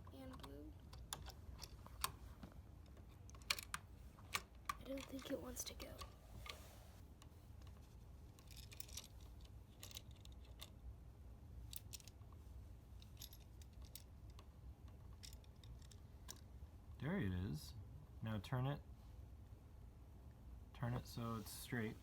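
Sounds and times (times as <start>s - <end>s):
faint metallic clicks and scrapes: 0.0s - 10.8s, 11.7s - 16.5s.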